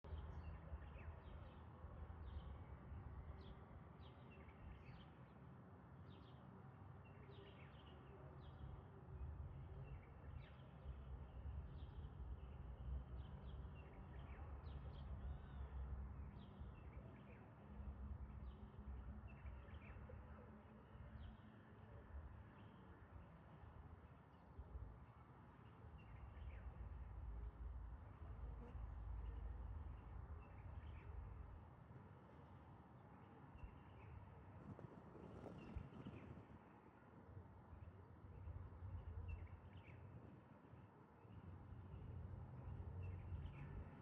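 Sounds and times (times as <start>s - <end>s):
faint low rumble: 6.2s - 44.0s.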